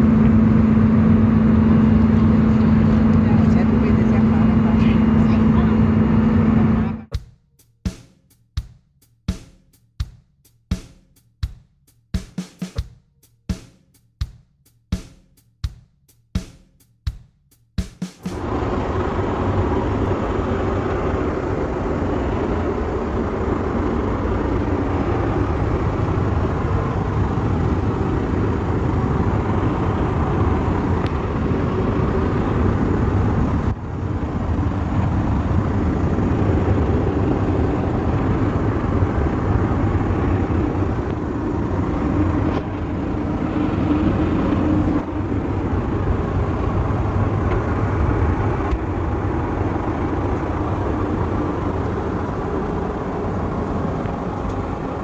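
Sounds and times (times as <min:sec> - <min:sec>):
aircraft cabin engine roar: 0:00.0 - 0:07.2, 0:18.2 - 0:55.0.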